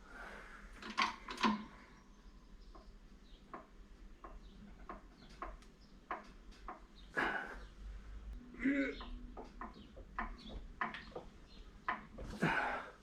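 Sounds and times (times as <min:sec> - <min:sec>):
workshop press knocks and clicks: 0:09.0 - 0:12.5.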